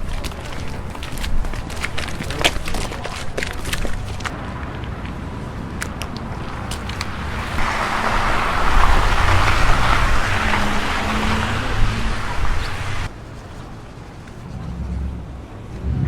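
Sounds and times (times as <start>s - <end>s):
vehicle passing close: 4.3s - 13.1s.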